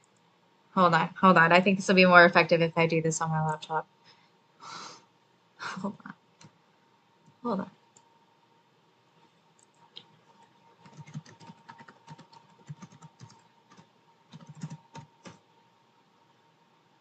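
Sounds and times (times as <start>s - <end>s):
laptop keyboard typing: 9.6s - 15.4s.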